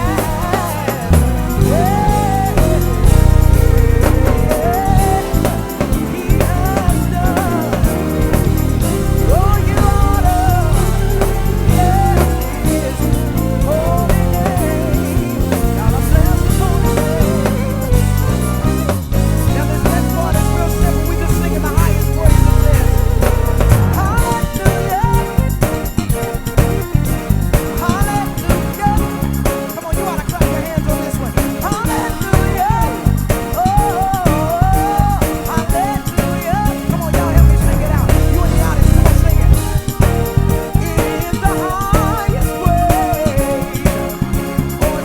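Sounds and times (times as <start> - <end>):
electric bass: 0.0 - 25.6, 36.9 - 41.0
drums: 0.0 - 45.0
gospel band playing: 0.0 - 45.0
organ: 0.0 - 45.0
wavering lead melody: 0.6 - 19.3, 22.1 - 24.9, 37.1 - 40.8.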